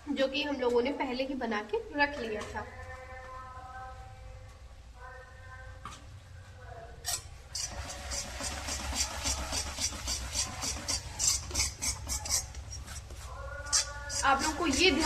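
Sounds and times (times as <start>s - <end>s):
spoon scraping a pan: 8.9s - 13.1s, 13.7s - 15.0s.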